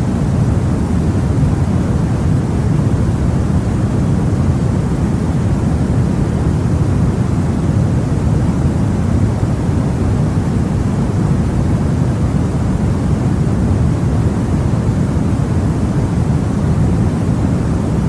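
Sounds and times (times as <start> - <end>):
deep brown noise: 0.0 - 18.0.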